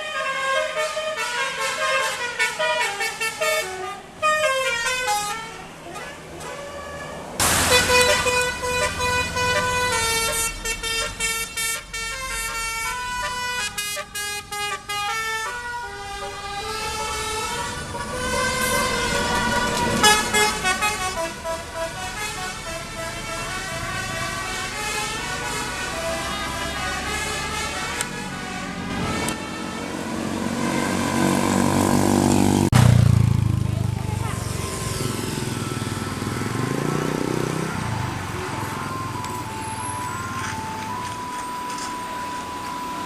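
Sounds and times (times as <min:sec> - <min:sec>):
musical air horn tune: 0:00.0 - 0:31.6.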